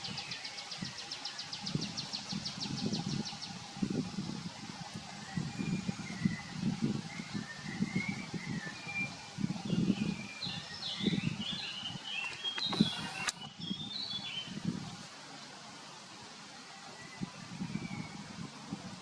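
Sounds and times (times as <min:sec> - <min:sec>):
sharp click: 0:12.2 - 0:13.5.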